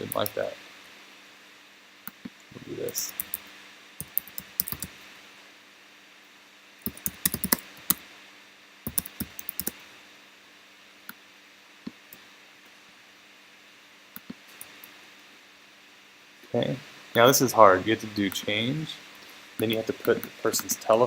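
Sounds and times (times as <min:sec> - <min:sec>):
typing on computer keyboard: 0:03.1 - 0:04.9, 0:06.9 - 0:08.0, 0:08.9 - 0:09.8, 0:19.6 - 0:20.3.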